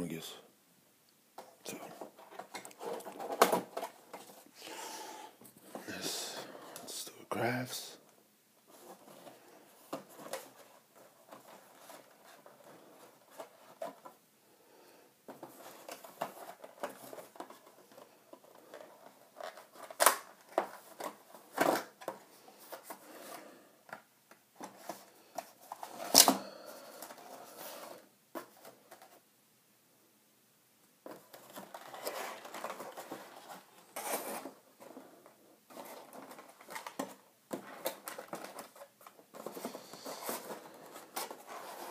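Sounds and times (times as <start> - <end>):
packaging rustling and tearing: 31.1 - 35.1.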